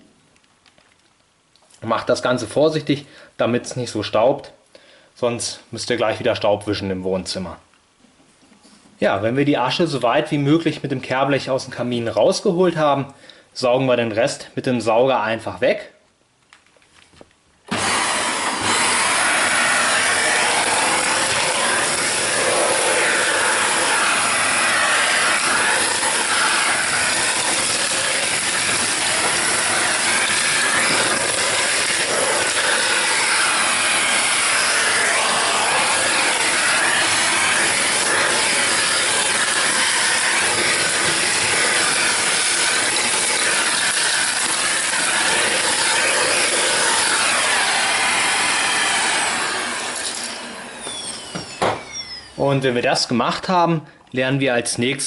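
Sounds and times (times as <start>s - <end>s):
vacuum cleaner running: 17.7s - 52.4s.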